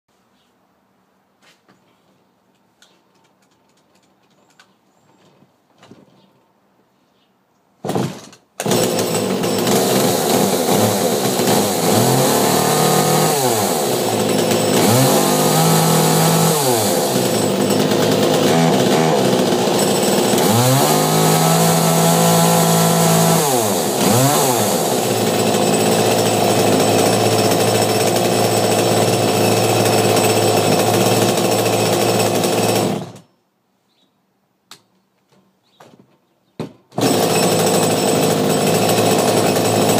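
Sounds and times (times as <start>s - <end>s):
chainsaw revving: 7.8s - 33.3s, 37.0s - 39.9s.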